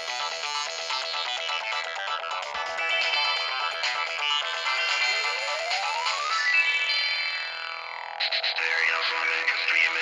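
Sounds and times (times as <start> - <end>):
electronic phone ringtone melody: 2.9 - 7.6.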